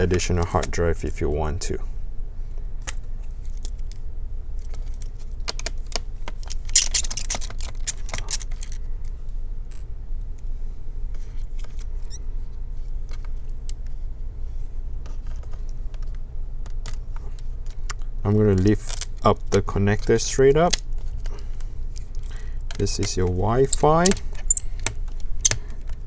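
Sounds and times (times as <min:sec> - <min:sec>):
scraping rustle: 0:06.3 - 0:08.8.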